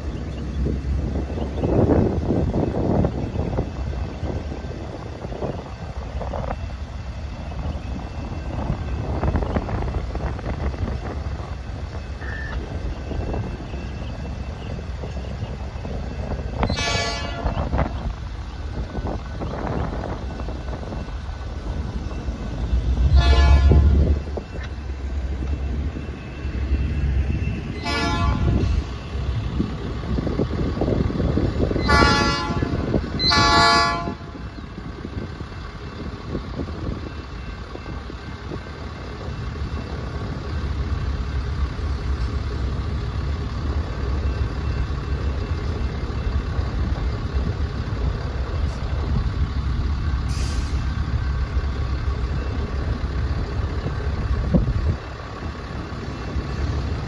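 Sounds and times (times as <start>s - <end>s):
diesel engine rumble: 0.0s - 57.0s
locomotive horn blasts: 16.6s - 17.7s, 23.0s - 24.2s, 27.7s - 28.9s, 31.8s - 34.5s.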